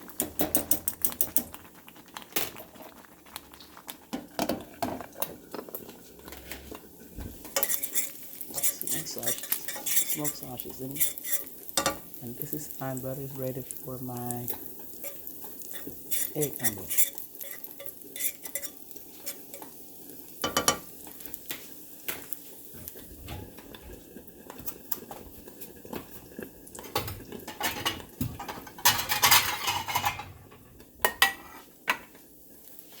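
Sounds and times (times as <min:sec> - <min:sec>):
food sizzling in a pan: 0:00.0 - 0:33.0
utensils clinking on pots: 0:07.4 - 0:19.8, 0:20.4 - 0:20.9, 0:26.8 - 0:32.1.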